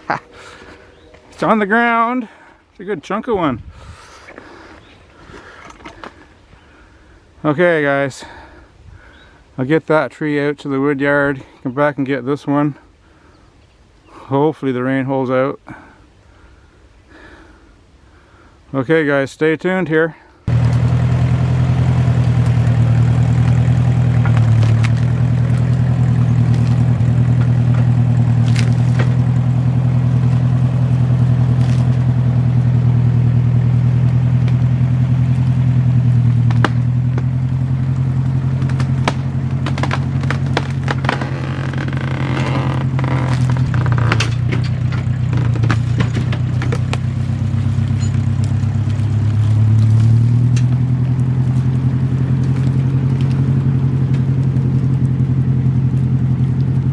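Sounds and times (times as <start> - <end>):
branches cracking and snapping: 20.5 - 56.9
tractor engine running under load: 20.5 - 56.9.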